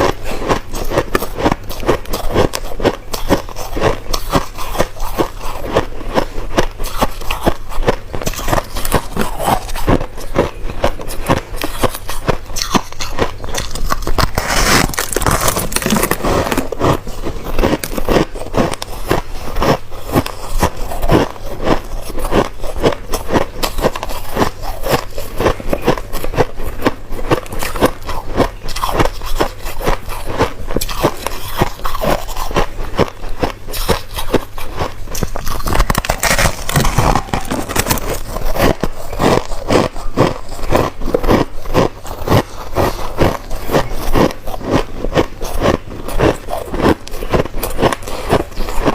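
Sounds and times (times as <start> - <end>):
chewing crushed ice: 0.0 - 48.9.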